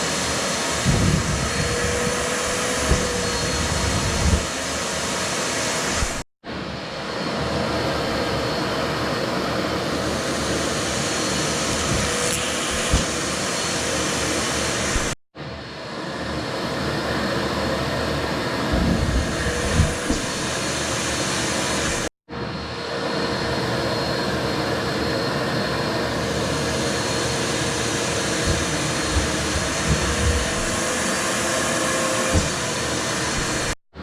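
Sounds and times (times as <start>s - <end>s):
vacuum cleaner running: 0.0s - 34.0s
low thumps of clothing: 12.7s - 13.2s, 18.7s - 20.4s, 28.3s - 31.2s, 32.3s - 32.7s.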